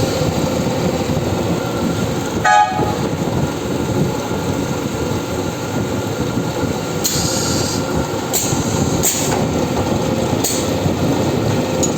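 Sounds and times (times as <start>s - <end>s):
drilling machine rumbling: 0.0s - 11.9s
short hissing bursts: 7.0s - 9.3s.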